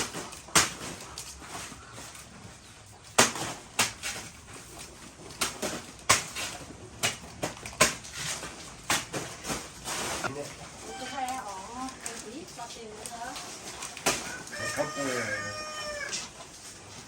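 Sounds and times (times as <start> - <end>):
blade chopping into wood: 0.0 - 1.0, 3.2 - 4.2, 5.4 - 8.2.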